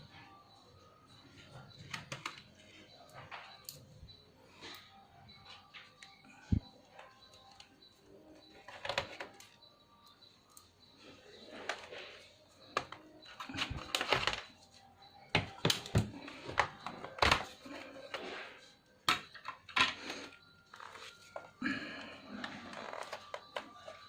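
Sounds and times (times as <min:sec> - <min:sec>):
plastic parts handled and set down: 0:19.1 - 0:20.3.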